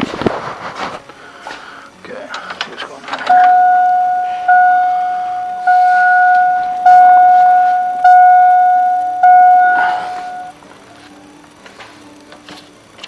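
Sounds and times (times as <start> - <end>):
electronic warning chime: 3.3 - 10.6.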